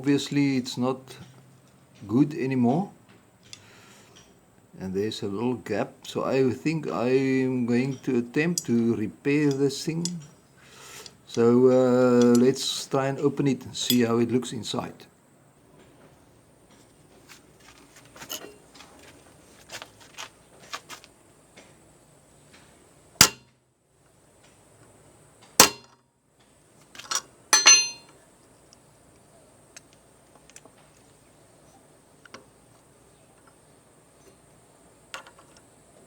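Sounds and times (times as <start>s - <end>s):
metal tools clinking on ratchet: 12.2s - 12.6s, 27.0s - 28.2s
ringing metal clang: 23.2s - 23.5s, 25.6s - 25.9s, 27.5s - 28.1s.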